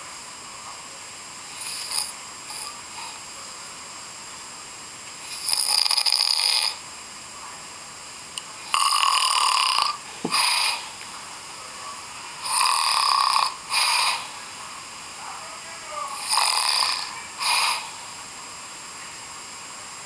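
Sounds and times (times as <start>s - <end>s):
person snoring: 1.5s - 3.2s, 5.3s - 6.8s, 8.7s - 11.0s, 12.4s - 14.4s, 16.1s - 18.1s
snort-like breath: 1.5s - 3.2s, 8.8s - 11.0s, 12.4s - 14.4s, 16.2s - 18.1s.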